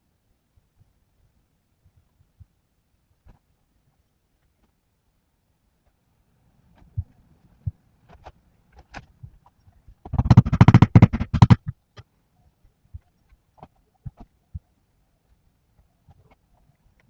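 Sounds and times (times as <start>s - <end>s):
wooden parts knocking: 10.1s - 11.7s.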